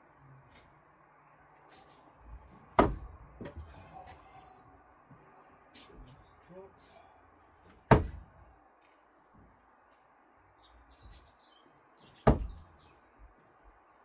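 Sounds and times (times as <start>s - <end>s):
small birds chirping: 9.9s - 13.3s
screwdrivers hitting target: 12.3s - 12.6s.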